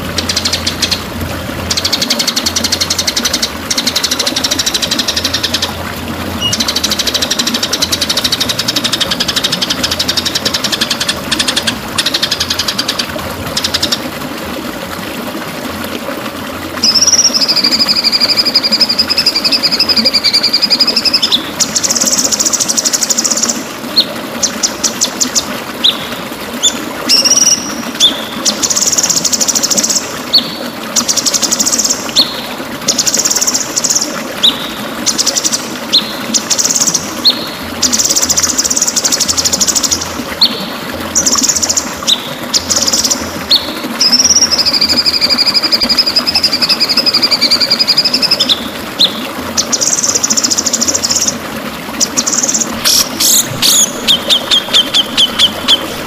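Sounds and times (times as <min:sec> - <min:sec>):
running water: 0:00.0 - 0:56.0
bird singing trills and whistles: 0:06.4 - 0:12.9, 0:16.8 - 0:23.4, 0:26.6 - 0:28.3, 0:52.2 - 0:56.0.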